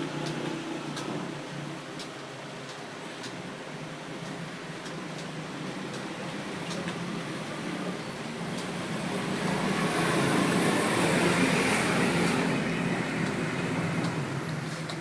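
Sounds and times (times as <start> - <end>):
road traffic rumble: 0.0 - 15.0
vehicle passing rush: 8.8 - 14.7.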